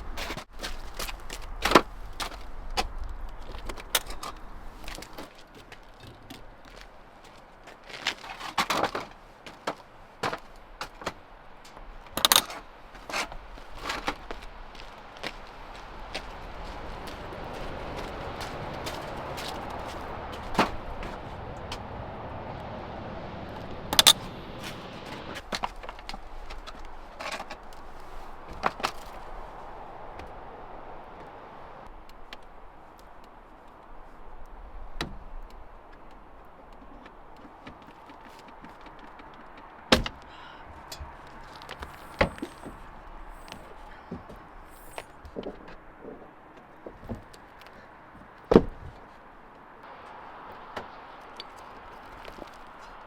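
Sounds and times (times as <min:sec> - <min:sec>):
irregular knocks and clicks: 0:35.0 - 0:42.9.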